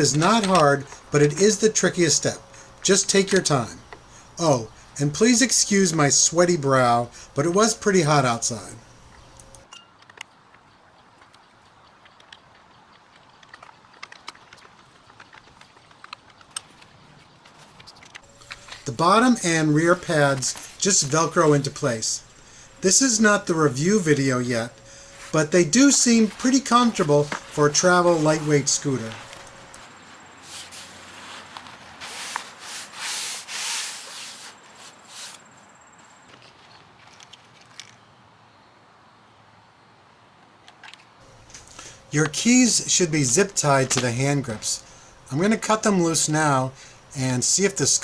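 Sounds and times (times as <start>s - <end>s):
steady background hiss: 0.0s - 9.7s, 18.3s - 36.3s, 41.2s - 48.0s
velcro pads rasping: 13.4s - 35.5s.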